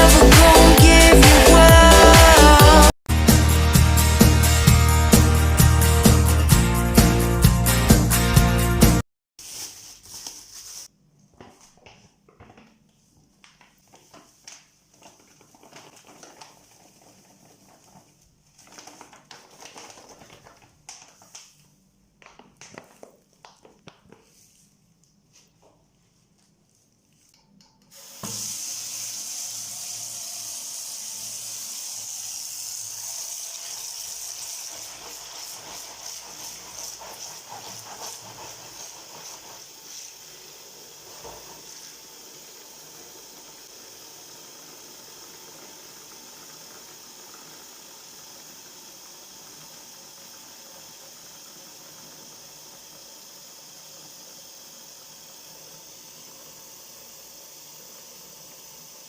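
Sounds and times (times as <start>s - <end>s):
tap water running into basin: 13.5s - 21.5s, 27.9s - 59.0s.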